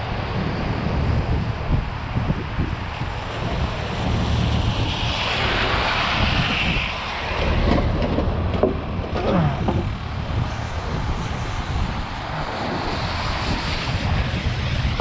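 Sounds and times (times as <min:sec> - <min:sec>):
freeway traffic on wet pavement: 0:00.0 - 0:15.0
wind rumbling on microphone: 0:00.0 - 0:15.0
vehicle tyre hiss: 0:10.4 - 0:15.0.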